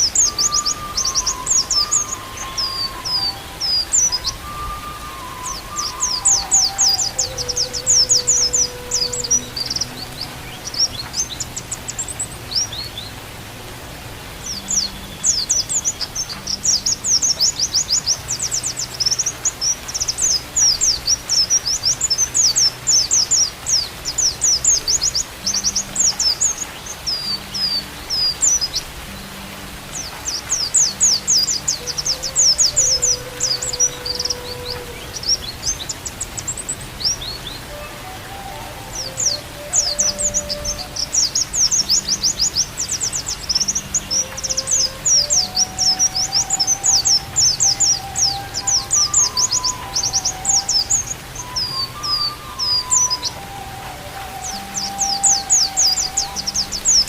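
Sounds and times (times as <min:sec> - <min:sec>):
bird chirping rapid high song: 0:00.0 - 0:13.5, 0:14.3 - 0:57.0
rain hissing: 0:00.0 - 0:57.0.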